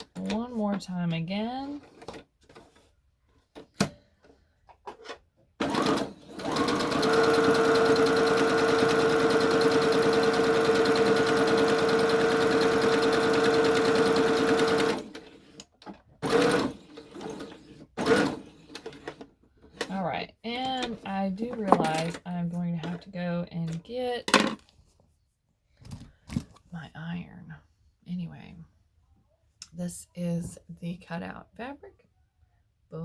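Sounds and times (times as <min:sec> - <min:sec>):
sewing machine stitching: 0:05.6 - 0:19.2.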